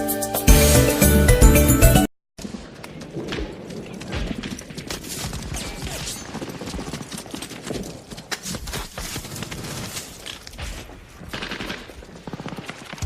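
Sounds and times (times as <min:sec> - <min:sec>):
airsoft guns firing: 0:02.4 - 0:08.5, 0:10.6 - 0:13.0.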